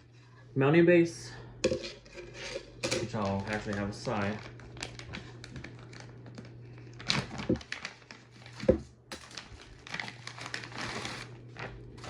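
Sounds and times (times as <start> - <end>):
packaging crinkling and rustling: 2.8 - 12.0.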